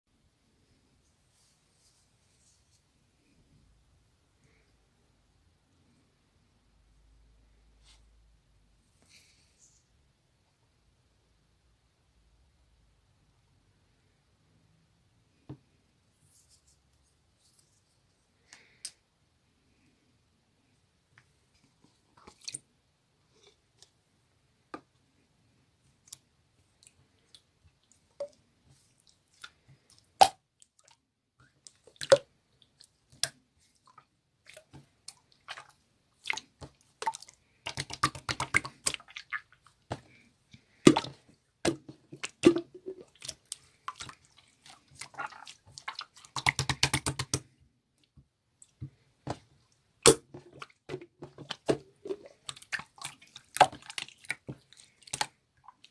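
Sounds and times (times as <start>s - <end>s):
wet bubbly slime crackling: 28.8s - 47.4s, 50.0s - 55.9s.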